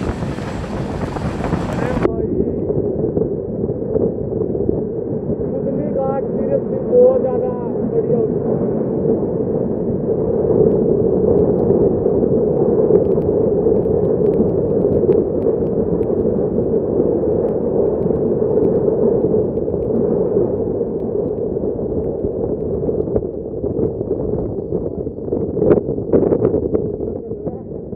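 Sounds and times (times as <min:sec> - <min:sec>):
train rumbling on track: 0:00.0 - 0:02.1
wind blowing on microphone: 0:00.0 - 0:27.9.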